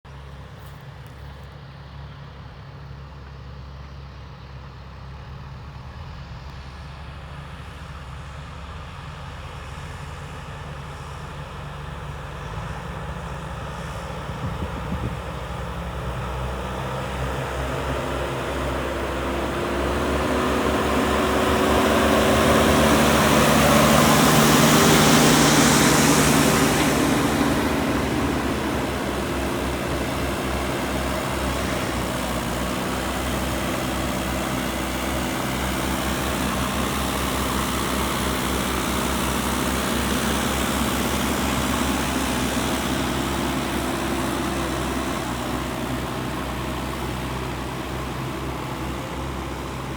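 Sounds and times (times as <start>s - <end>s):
diesel engine running: 0.1s - 49.9s
rushing hiss: 21.6s - 45.8s.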